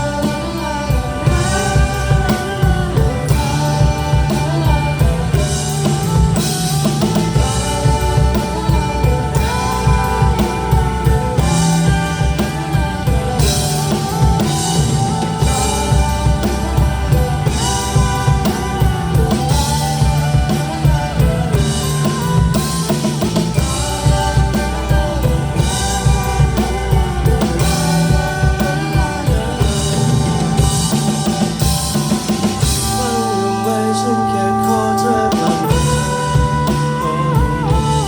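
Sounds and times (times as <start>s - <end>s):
drum kit beat: 0.0s - 38.0s
live pop-rock band playing: 0.0s - 38.0s.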